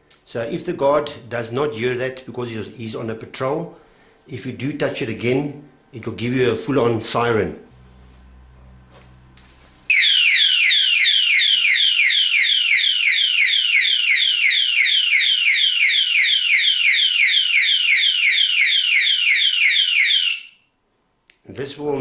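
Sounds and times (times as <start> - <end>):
alarm siren wailing: 9.9 - 20.7.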